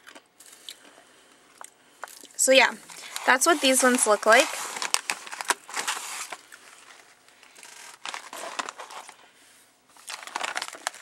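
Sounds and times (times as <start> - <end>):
plastic packaging crinkling: 2.0 - 9.2, 9.9 - 11.0.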